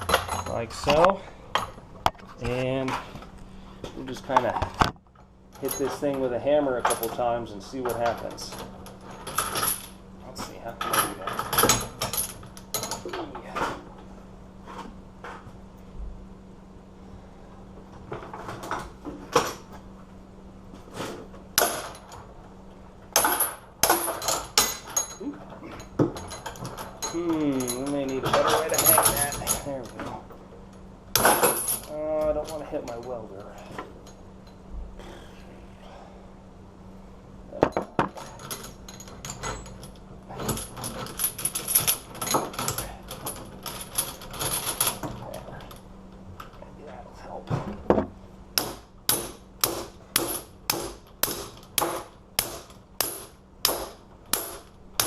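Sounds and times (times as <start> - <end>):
padlock clanking on steel chain: 23.2 - 30.0, 37.7 - 45.8.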